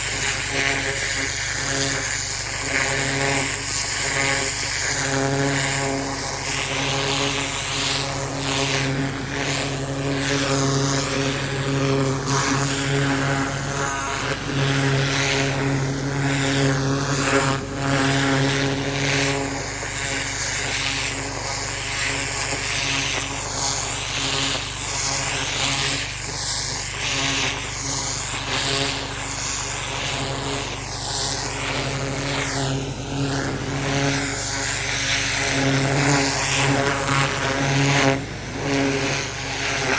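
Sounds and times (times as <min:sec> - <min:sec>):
pressure washer engine running: 0:00.0 - 0:39.9
water jet hissing into gravel: 0:00.0 - 0:39.9.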